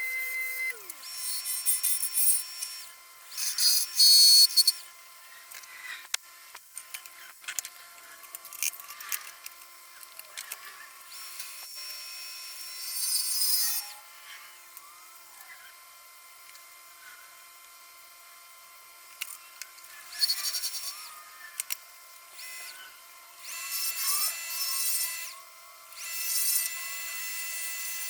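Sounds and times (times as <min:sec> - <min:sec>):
woodworking tools cutting wood: 0:22.4 - 0:25.4, 0:26.0 - 0:28.0.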